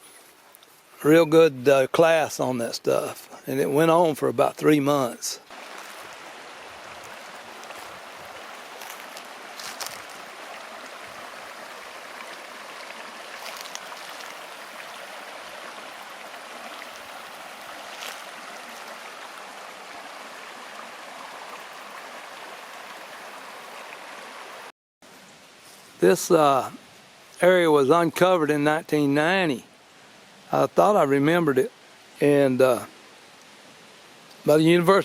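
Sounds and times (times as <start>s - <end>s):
stream rushing: 2.0s - 24.7s.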